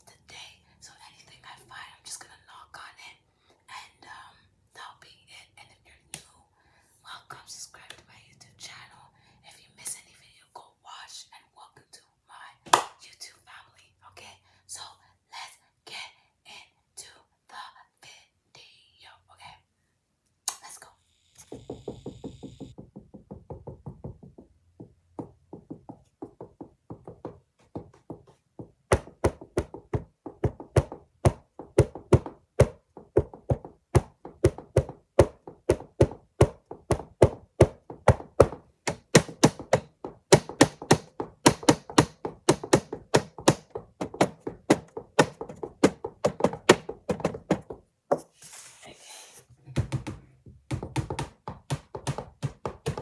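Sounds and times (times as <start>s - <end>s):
knocking on a hard surface: 21.5s - 48.2s, 49.7s - 53.0s.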